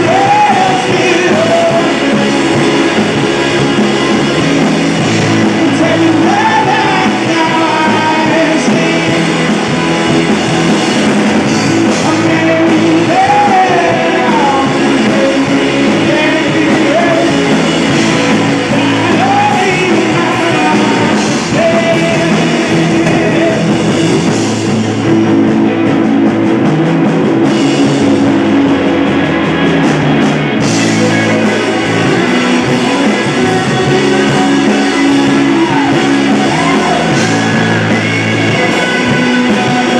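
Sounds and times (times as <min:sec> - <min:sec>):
person singing: 0:00.0 - 0:24.3, 0:30.6 - 0:39.9
rock band playing live: 0:00.0 - 0:39.9.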